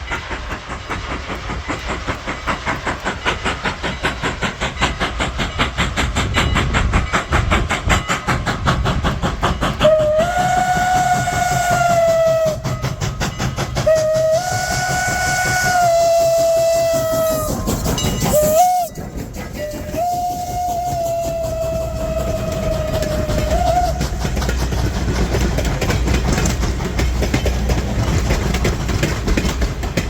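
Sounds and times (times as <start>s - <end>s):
steam locomotive chuffing: 0.0s - 30.0s
steam whistle blasts: 9.8s - 13.0s, 13.8s - 19.0s, 19.6s - 24.1s.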